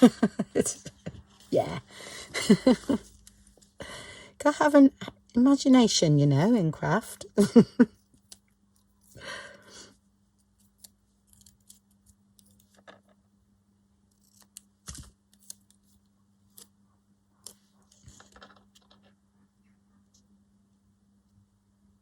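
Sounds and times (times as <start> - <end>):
faint steady hum: 0.0 - 22.0
scissors snipping paper: 10.6 - 12.6
paper rustling: 17.4 - 19.1.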